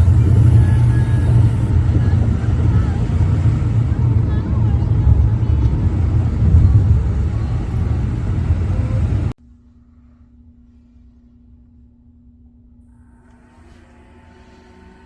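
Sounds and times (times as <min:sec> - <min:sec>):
road noise inside car: 0:00.0 - 0:09.4
faint steady hum: 0:00.0 - 0:15.0.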